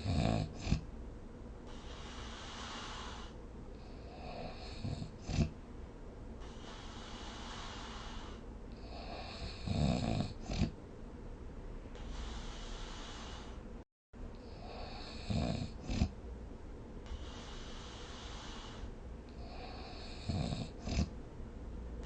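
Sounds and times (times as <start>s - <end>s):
person snoring: 0.0s - 0.9s, 1.7s - 5.5s, 6.4s - 10.8s, 12.0s - 13.6s, 14.4s - 16.1s, 17.1s - 21.1s
airy breath: 1.6s - 5.2s, 6.4s - 9.7s, 11.9s - 13.8s, 17.0s - 20.8s.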